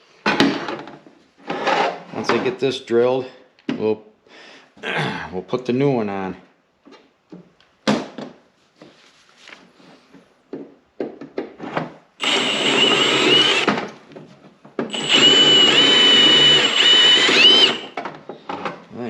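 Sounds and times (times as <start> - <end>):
power drill drilling rivet: 12.2 - 13.8, 14.9 - 18.0.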